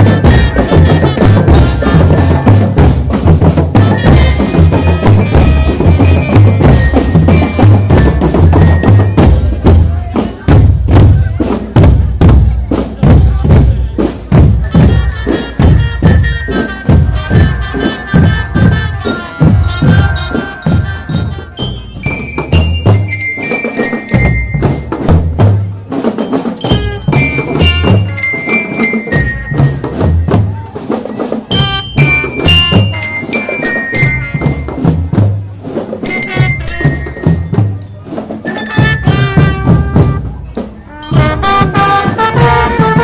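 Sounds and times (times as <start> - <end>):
bell lyra melody: 0.0 - 3.1, 3.8 - 9.8, 14.6 - 25.2, 26.2 - 30.5, 31.5 - 40.1, 40.9 - 43.0
steady drum beat: 0.0 - 43.0.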